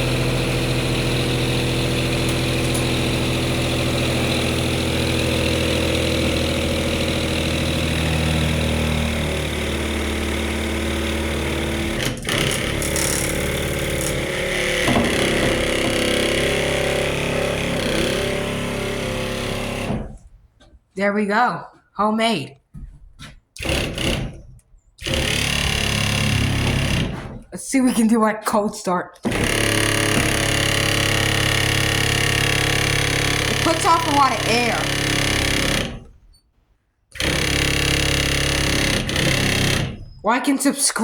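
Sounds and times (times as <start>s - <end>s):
electric weed trimmer drone: 12.5s - 19.9s, 29.3s - 35.9s.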